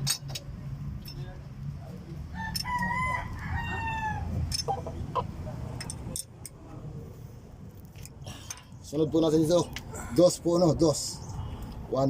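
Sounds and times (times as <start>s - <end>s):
rooster crowing: 2.3s - 4.5s
metallic clicks of hand tools: 5.8s - 6.6s.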